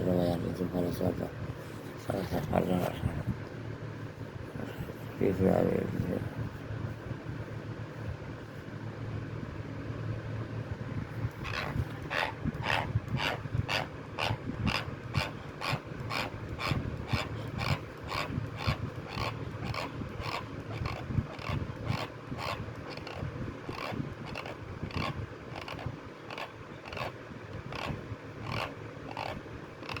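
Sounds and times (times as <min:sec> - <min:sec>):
low background hum: 0:00.0 - 0:30.0
teeth grinding: 0:11.5 - 0:23.2, 0:23.8 - 0:30.0.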